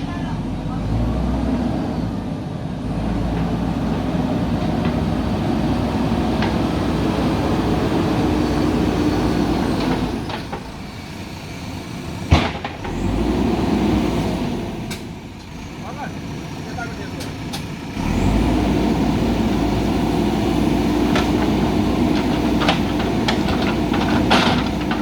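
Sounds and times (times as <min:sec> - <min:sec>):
diesel engine under load: 0:00.0 - 0:25.0.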